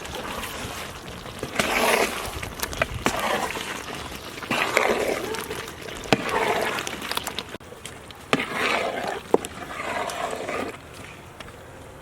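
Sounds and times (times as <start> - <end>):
ladle stirring thick gravy: 0.0 - 11.4.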